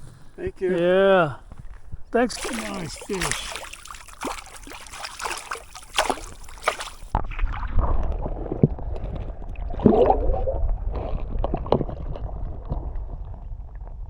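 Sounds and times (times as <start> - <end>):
river water gurgling: 2.2 - 7.2.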